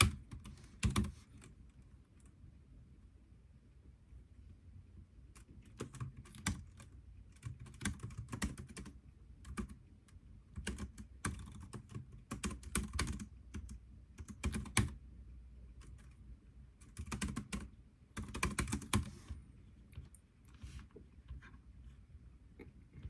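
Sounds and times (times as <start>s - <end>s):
computer keyboard typing: 0.0s - 1.6s, 5.4s - 9.8s, 10.5s - 15.0s, 15.8s - 16.2s, 16.8s - 19.3s.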